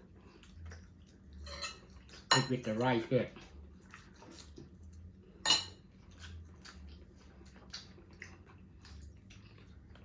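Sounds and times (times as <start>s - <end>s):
faint chewing: 0.0s - 2.3s, 3.0s - 10.0s
tableware clink: 1.4s - 2.5s, 5.4s - 5.8s.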